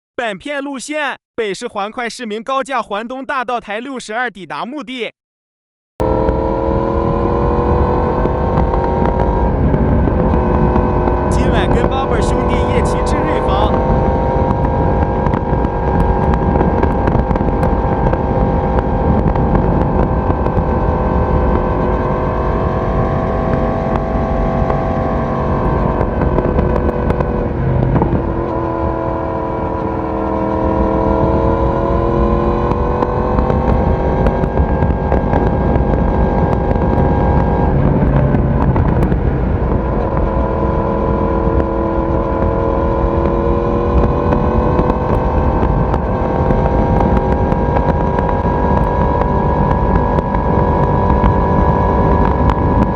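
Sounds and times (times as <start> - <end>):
motorcycle engine cruising: 6.0 - 52.9.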